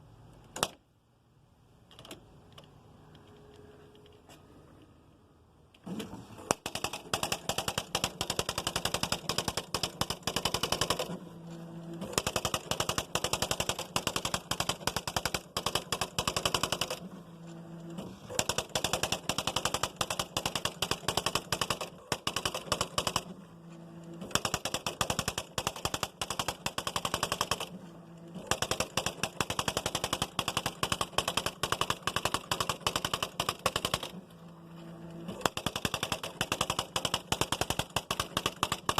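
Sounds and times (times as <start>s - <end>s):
low steady hum: 0.0s - 15.9s
typewriter rattling strikes: 6.5s - 11.2s, 12.0s - 17.0s, 18.3s - 23.3s, 24.2s - 27.7s, 28.4s - 34.2s, 35.4s - 38.9s.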